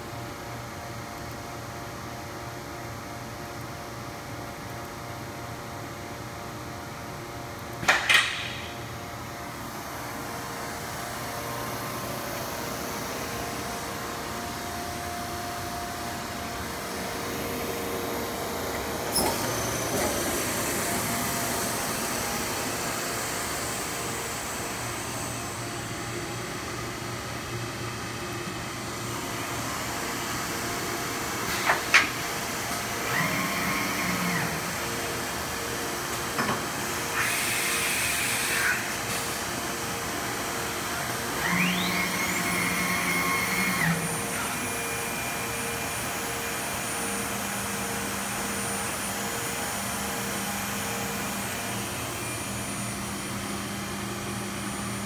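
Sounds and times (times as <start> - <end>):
high spindle whine: 9.8 - 26.1
router machine hum: 11.0 - 27.2, 37.2 - 55.0.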